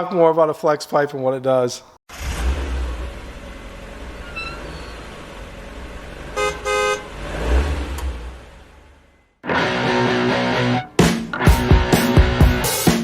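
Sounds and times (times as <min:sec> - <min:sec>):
low road rumble: 0:02.1 - 0:09.4
car horn toots: 0:06.2 - 0:07.3
music: 0:09.4 - 0:13.0.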